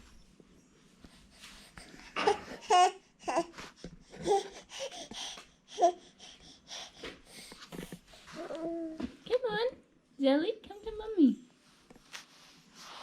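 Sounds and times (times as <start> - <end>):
baby babbling: 2.2 - 3.5, 4.2 - 5.1, 5.7 - 6.1, 8.3 - 9.0.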